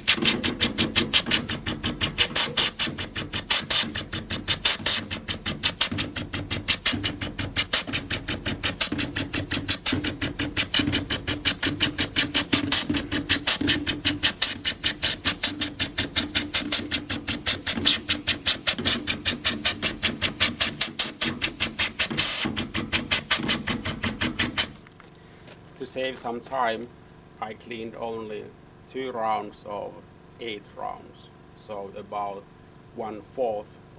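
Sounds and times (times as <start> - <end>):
air pulsator rattling puffs: 0.0 - 24.8.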